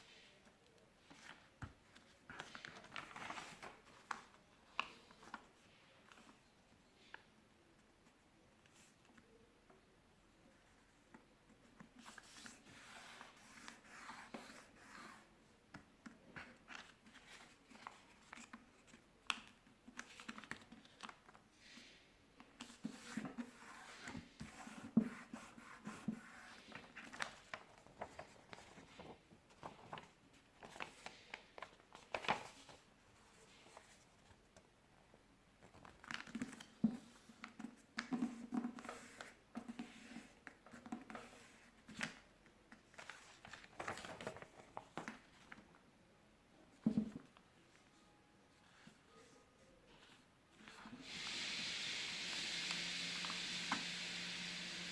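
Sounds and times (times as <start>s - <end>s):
paper rustling and crinkling: 1.0s - 6.4s, 26.6s - 34.4s, 35.6s - 36.8s, 41.1s - 45.7s
paper creasing strokes: 50.7s - 54.9s.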